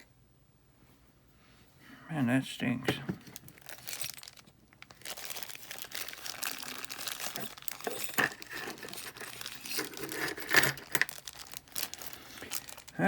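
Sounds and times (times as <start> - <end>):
packaging crinkling: 3.2 - 13.0
small parts clicking: 3.6 - 13.0.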